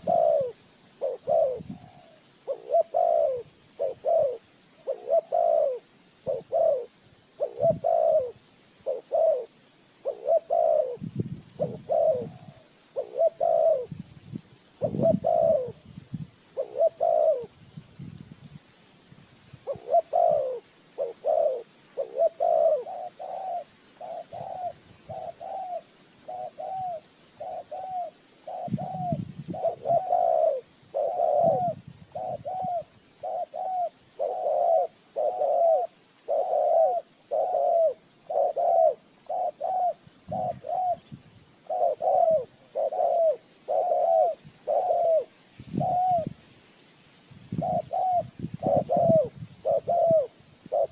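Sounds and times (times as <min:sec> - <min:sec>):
doves cooing: 0:00.0 - 0:14.0, 0:14.8 - 0:15.8, 0:16.5 - 0:17.6, 0:19.6 - 0:46.4, 0:47.5 - 0:50.9.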